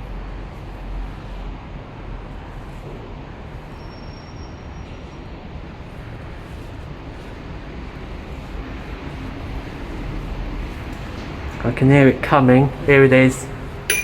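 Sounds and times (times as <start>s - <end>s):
low rumbling background noise: 4.6s - 14.0s.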